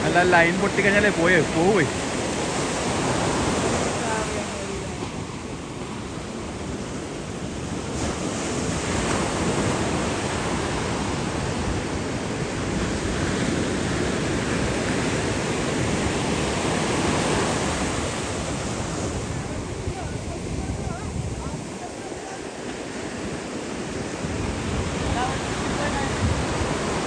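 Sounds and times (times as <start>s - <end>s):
sea waves: 0.0s - 27.0s
wind rushing: 8.1s - 21.9s, 22.7s - 27.0s.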